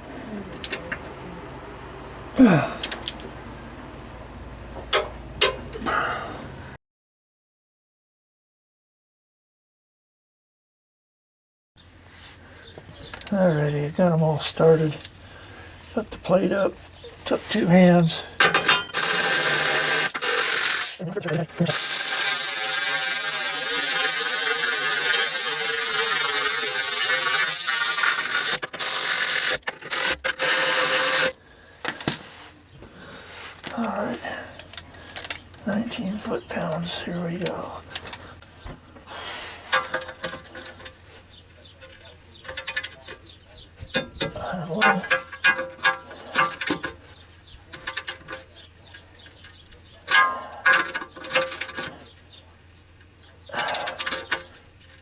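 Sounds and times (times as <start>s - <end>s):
power ratchet running bolts: 18.4s - 31.4s
torque wrench clicking: 18.6s - 21.0s, 21.7s - 31.4s.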